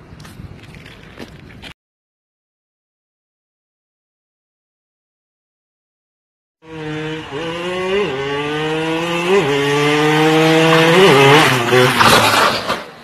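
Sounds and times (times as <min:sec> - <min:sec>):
motorcycle engine accelerating: 0:06.6 - 0:12.3
loud crash: 0:11.6 - 0:13.0.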